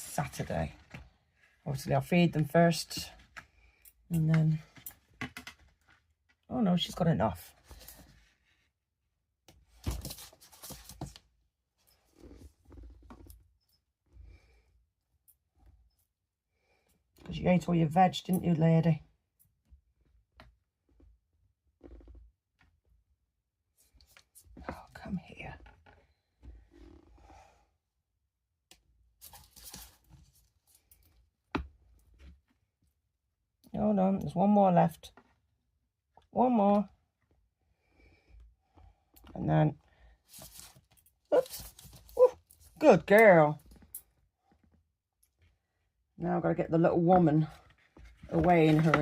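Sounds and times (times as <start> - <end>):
scratching and rustling: 40.2 - 42.8, 47.5 - 49.0.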